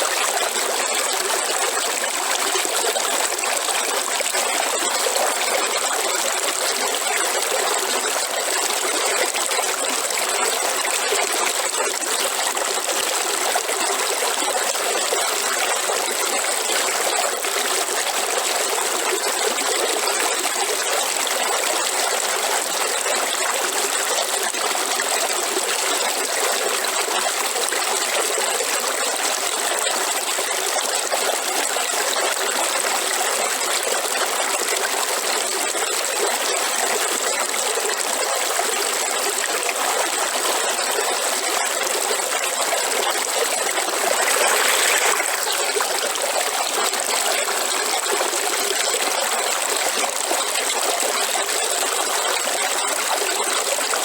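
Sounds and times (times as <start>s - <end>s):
river water flowing: 32.2s - 54.0s.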